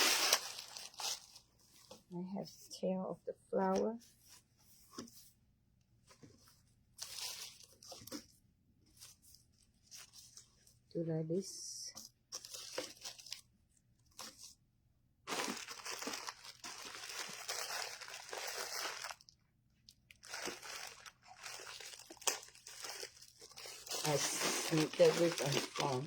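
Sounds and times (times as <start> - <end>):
ribbon crinkling: 0.0 - 1.4, 15.3 - 26.0
ribbon rustling: 0.0 - 2.1, 15.3 - 19.4, 20.1 - 26.0.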